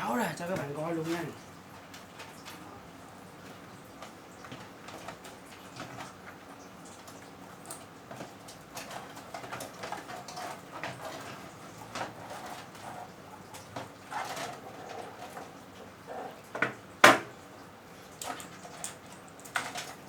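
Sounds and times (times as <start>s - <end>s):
rustling with small clicks: 3.4s - 16.0s, 17.9s - 20.0s.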